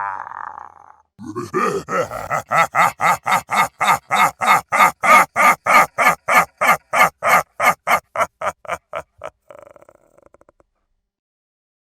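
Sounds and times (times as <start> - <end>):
evil laugh: 1.2 - 10.7.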